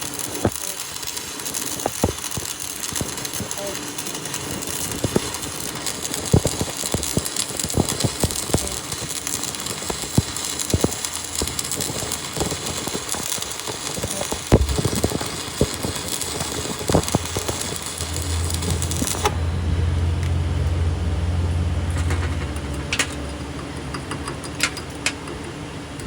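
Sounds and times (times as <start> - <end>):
arc welding crackling: 0.0 - 26.0
sharp clicks and knocks: 0.2 - 19.4, 21.9 - 26.0
low machine hum: 14.4 - 26.0.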